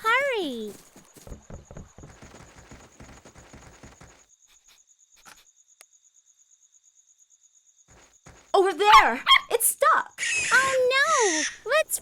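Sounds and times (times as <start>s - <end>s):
running footsteps: 0.0s - 4.3s, 7.9s - 8.6s
cricket chirping: 0.0s - 12.0s
single footsteps: 7.9s - 8.5s.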